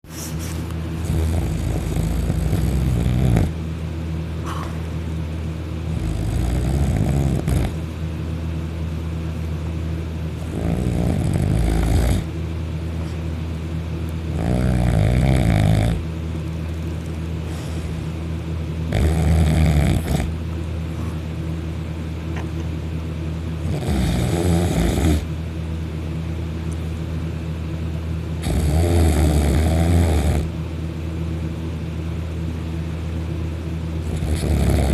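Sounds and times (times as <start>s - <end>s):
loud snoring: 1.0s - 3.6s, 5.9s - 7.8s, 10.4s - 12.3s, 14.3s - 16.0s, 18.9s - 20.4s, 23.6s - 25.3s, 28.4s - 30.5s, 34.0s - 34.9s.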